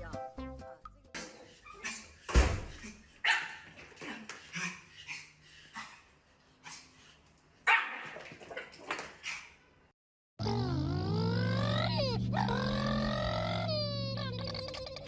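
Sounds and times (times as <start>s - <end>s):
dog barking: 3.2s - 3.6s, 7.7s - 8.1s.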